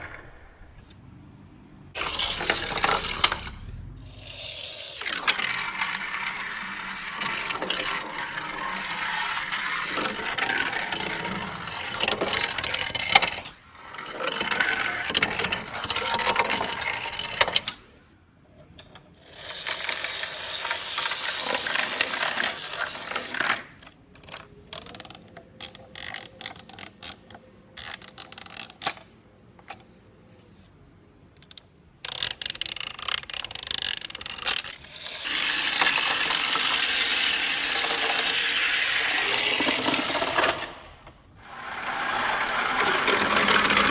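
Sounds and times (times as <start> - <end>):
toy train mechanisms clicking: 1.9 - 13.0, 18.4 - 40.7.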